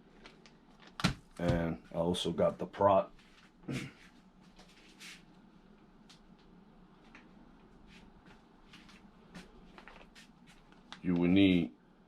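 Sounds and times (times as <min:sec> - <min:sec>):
faint clicks and rustles of parts: 0:00.0 - 0:01.9, 0:03.1 - 0:11.5.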